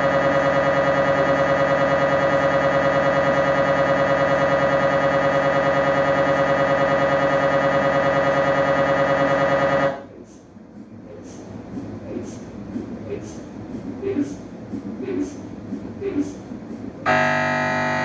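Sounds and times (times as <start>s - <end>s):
mri scanner pulsing buzz: 0.0s - 10.0s, 17.0s - 18.0s.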